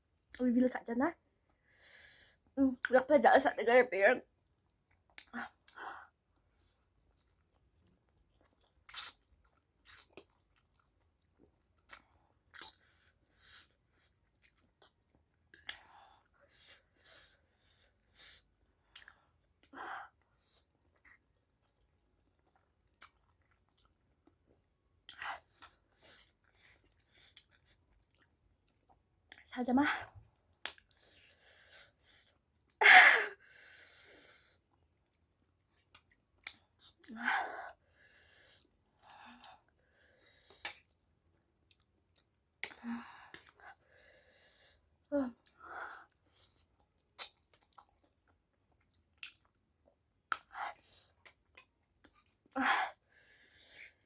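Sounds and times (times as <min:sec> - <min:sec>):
person chewing and biting: 0:08.4 - 0:13.1, 0:46.6 - 0:49.6.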